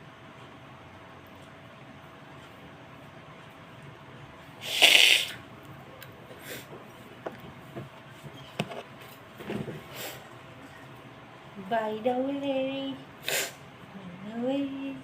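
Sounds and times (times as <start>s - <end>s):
person sneezing: 4.6s - 5.4s, 13.2s - 13.6s.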